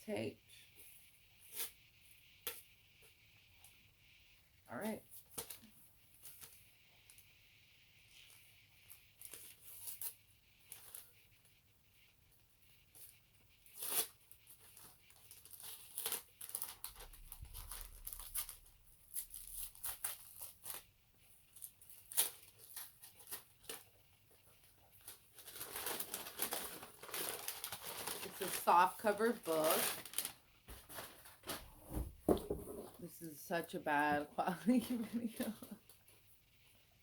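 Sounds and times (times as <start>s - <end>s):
wrapping rustling and crinkling: 5.1s - 7.3s, 8.1s - 11.5s, 12.9s - 36.2s
wrapping tape ripping: 13.6s - 20.9s, 21.6s - 24.0s, 25.0s - 30.4s.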